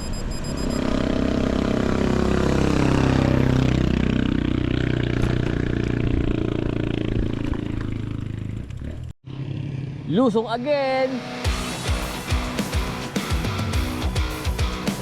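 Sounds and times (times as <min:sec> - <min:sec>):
vehicle passing by: 0:00.7 - 0:11.0.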